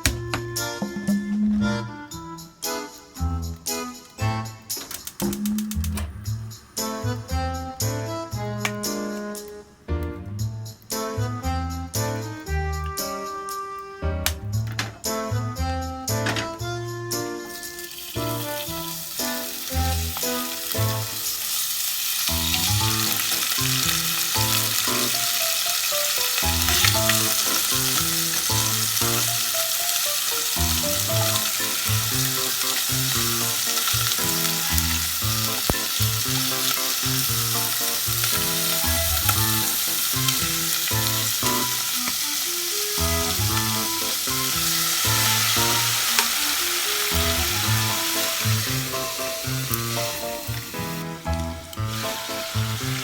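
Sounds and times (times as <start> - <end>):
background music with bass: 0.0 - 21.2, 22.3 - 25.2, 26.4 - 29.5, 30.5 - 42.1, 42.7 - 53.0
vegetables sizzling in a pan: 17.5 - 53.0.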